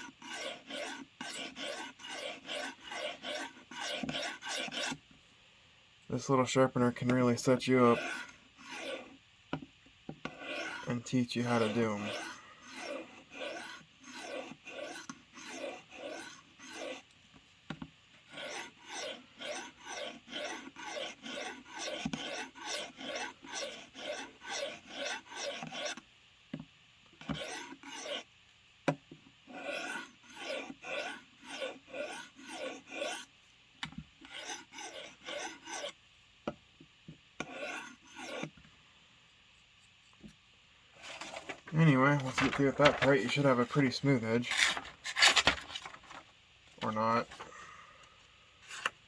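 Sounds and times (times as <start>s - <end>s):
knife rasping on sharpener: 0.0s - 5.0s, 7.8s - 9.2s, 10.2s - 17.1s, 18.3s - 26.0s, 27.2s - 28.3s, 29.5s - 33.3s, 34.2s - 36.0s, 37.4s - 38.5s.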